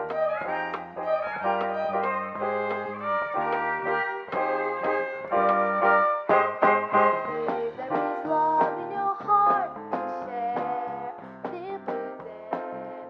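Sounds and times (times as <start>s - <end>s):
violins: 0.0s - 8.8s
drum strikes: 0.0s - 12.7s
jazz waltz: 0.0s - 13.0s
piano: 0.0s - 13.0s.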